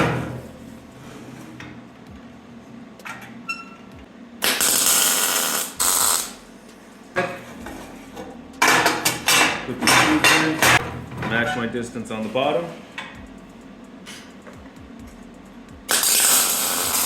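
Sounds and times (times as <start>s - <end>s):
welding tack hissing crackle: 4.4s - 6.5s, 15.9s - 17.0s.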